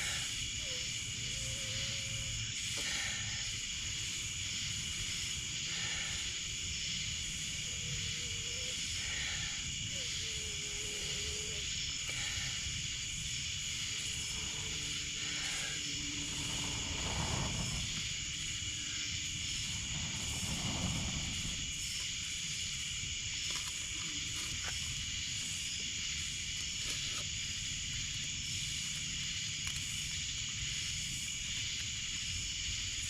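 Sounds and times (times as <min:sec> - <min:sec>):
crickets and katydids trilling: 0:00.0 - 0:33.0
rushing noise: 0:13.7 - 0:21.9.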